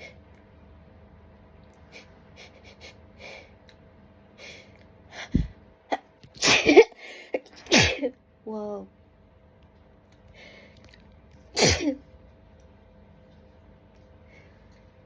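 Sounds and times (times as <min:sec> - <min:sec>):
person sneezing: 0:06.4 - 0:06.9, 0:07.6 - 0:08.1, 0:11.6 - 0:12.0.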